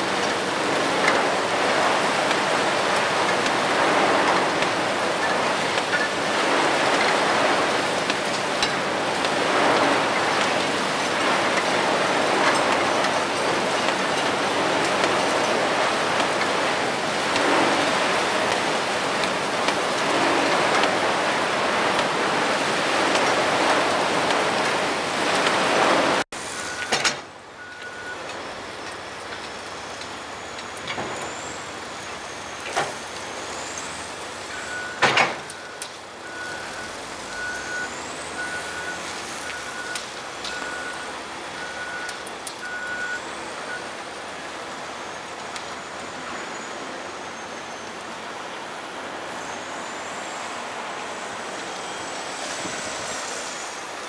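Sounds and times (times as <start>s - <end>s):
heavy machinery noise: 0.0s - 54.0s
reversing alarm beeping: 26.5s - 28.2s, 34.5s - 44.0s.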